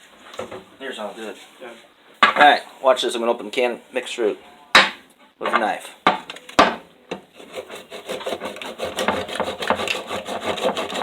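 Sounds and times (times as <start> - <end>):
knife sawing through metal can: 7.4 - 11.0.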